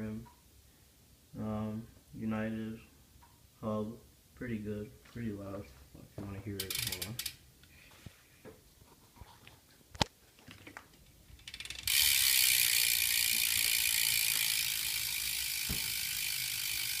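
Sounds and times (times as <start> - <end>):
bike hub ratchet clicking: 6.6 - 7.4, 11.4 - 17.0.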